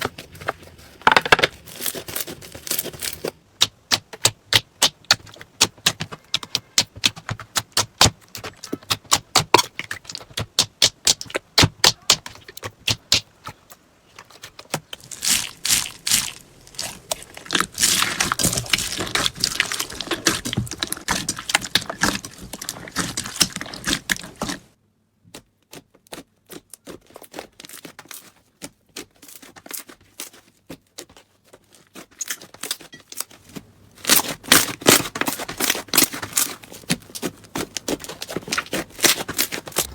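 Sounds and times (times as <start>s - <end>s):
slime crackling: 14.4s - 24.7s.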